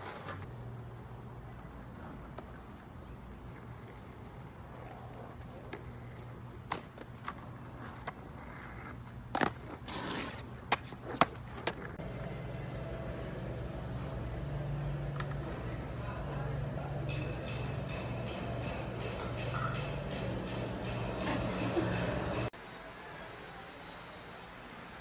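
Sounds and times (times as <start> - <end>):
skateboard clacking: 0.0 - 12.1
skateboard wheels rolling: 0.0 - 14.2
steady low hum: 11.8 - 22.6.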